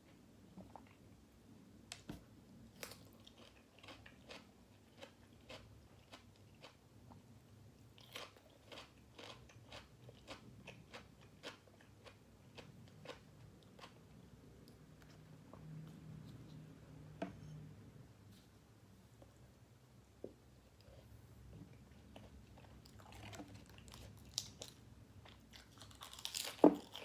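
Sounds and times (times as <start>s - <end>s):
person chewing crunchy food: 2.8s - 7.2s, 8.0s - 14.1s, 21.9s - 27.0s.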